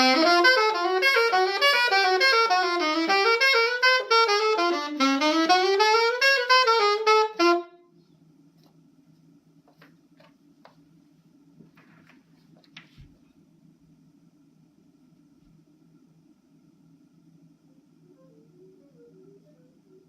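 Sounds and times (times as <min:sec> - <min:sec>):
saxophone melodic run: 0:00.0 - 0:07.9
faint low hum: 0:00.0 - 0:20.0.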